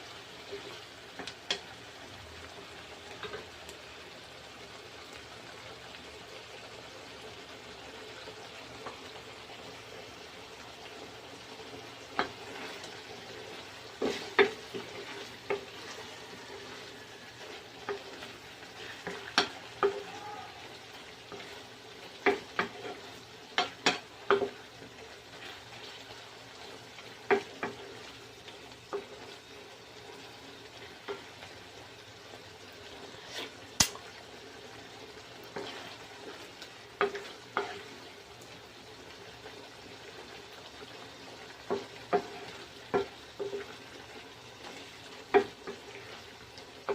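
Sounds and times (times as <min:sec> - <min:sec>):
meat sizzling in a frying pan: 0:00.0 - 0:46.9
metal utensil scraping a pan: 0:35.5 - 0:36.4.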